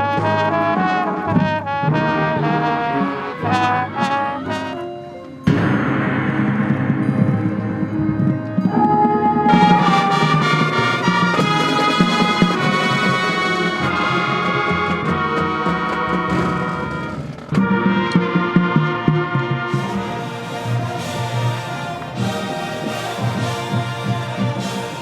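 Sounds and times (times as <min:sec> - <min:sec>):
marching band brass chords: 0:00.0 - 0:05.8, 0:09.5 - 0:17.3, 0:19.4 - 0:25.0
percussion hits: 0:19.6 - 0:25.0.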